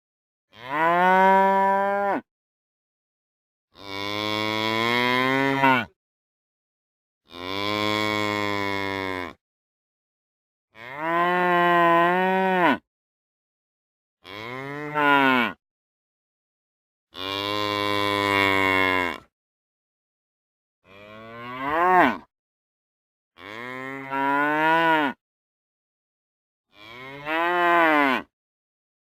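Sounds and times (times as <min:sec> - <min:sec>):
cow mooing: 0:00.5 - 0:02.3, 0:03.8 - 0:06.0, 0:07.3 - 0:09.4, 0:10.8 - 0:12.8, 0:14.2 - 0:15.6, 0:17.2 - 0:19.3, 0:20.9 - 0:22.3, 0:23.4 - 0:25.2, 0:26.7 - 0:28.3.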